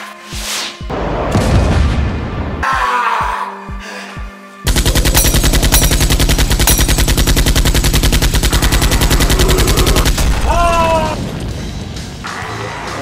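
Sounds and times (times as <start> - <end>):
machine-gun fire: 4.7 - 11.1.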